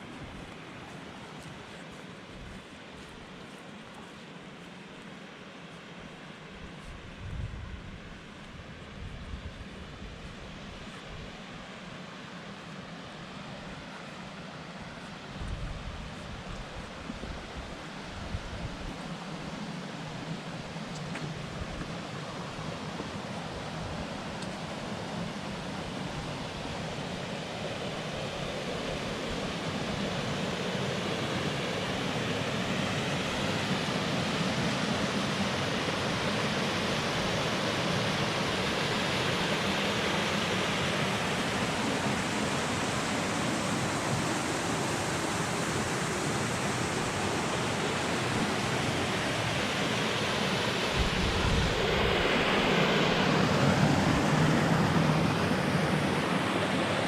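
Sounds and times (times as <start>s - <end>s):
water rushing under ice: 20.1s - 57.0s.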